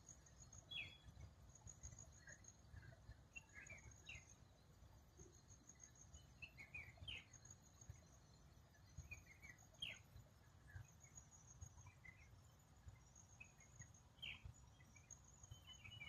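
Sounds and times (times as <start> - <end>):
bird chirps: 0.6 - 1.2, 1.8 - 4.4, 5.8 - 8.1, 8.8 - 12.4, 13.2 - 16.0.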